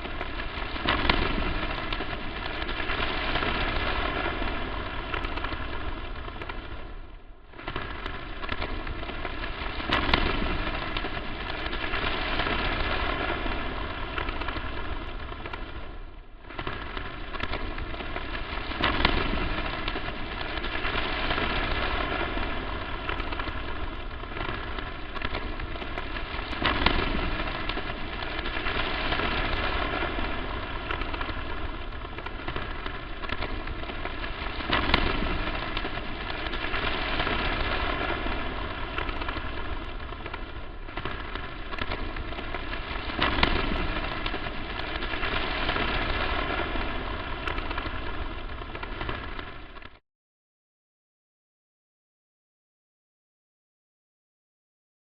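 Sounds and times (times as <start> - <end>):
crackling static hiss: 0.0 - 50.0.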